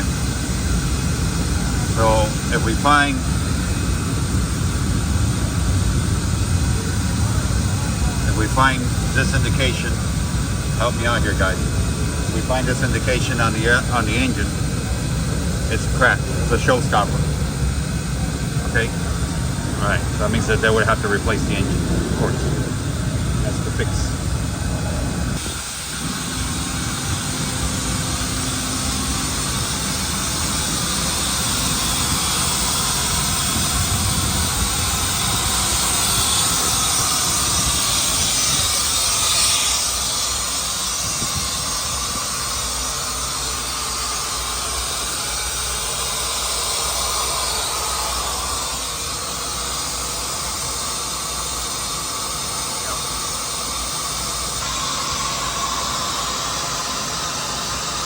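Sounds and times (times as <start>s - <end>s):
jet engines hissing: 0.0s - 58.0s.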